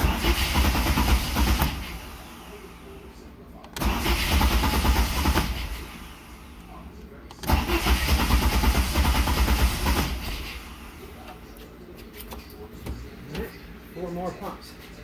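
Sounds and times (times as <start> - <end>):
engine cranking: 0.0 - 2.3, 3.7 - 6.2, 7.4 - 10.9.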